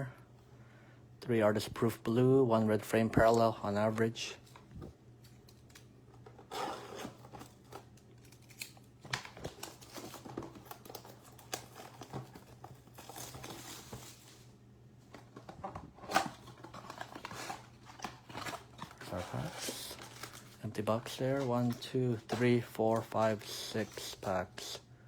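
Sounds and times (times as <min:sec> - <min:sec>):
plastic wrap and cardboard tearing: 0:16.1 - 0:22.4.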